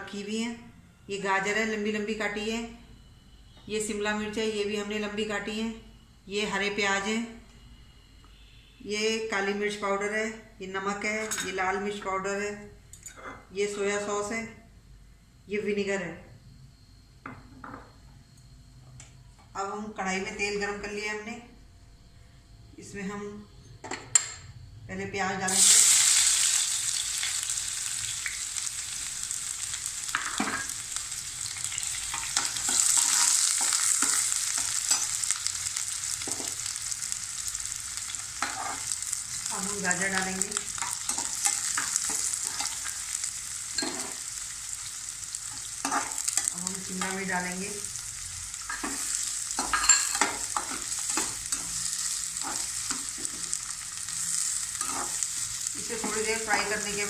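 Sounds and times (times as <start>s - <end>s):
onions sizzling in hot oil: 25.5s - 57.0s
spoon scraping and tapping pan: 43.7s - 44.2s, 48.7s - 51.8s, 54.8s - 55.2s.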